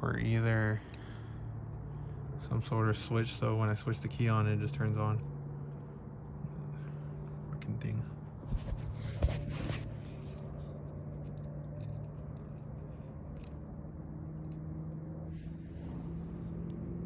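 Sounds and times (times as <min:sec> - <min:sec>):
handling scrapes and rustles: 0:08.4 - 0:13.6.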